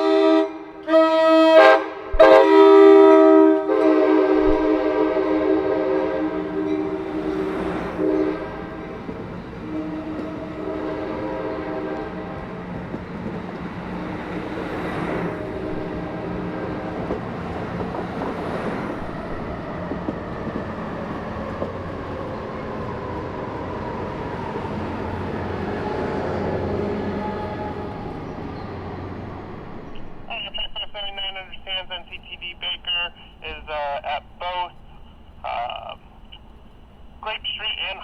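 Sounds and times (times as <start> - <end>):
train horn chord blasts: 0.0 - 9.0, 9.6 - 12.4
rail noise: 0.0 - 38.0
train engine drone: 0.0 - 38.0.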